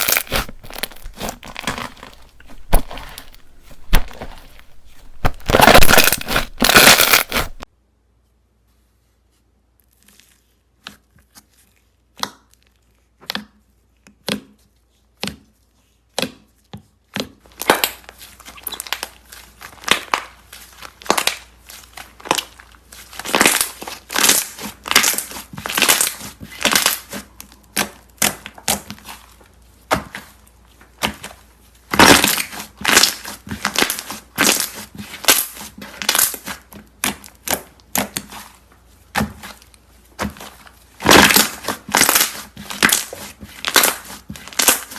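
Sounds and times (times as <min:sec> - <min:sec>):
slime crackling pops: 0:00.0 - 0:07.6.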